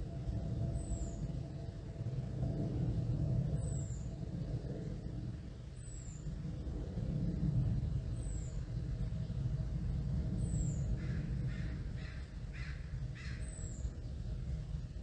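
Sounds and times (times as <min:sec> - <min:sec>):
plane rumbling overhead: 0:00.0 - 0:15.0
crow cawing: 0:11.0 - 0:13.4.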